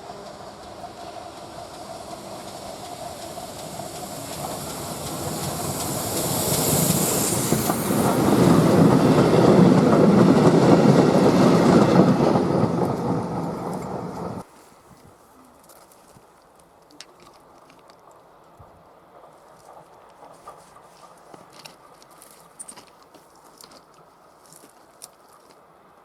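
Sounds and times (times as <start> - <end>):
train passing: 0.0 - 14.6, 17.4 - 26.0
wheels clicking over rail joints: 15.7 - 25.7.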